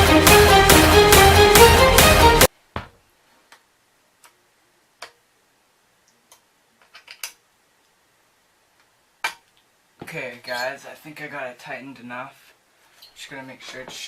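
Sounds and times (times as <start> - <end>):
background music: 0.0 - 2.5.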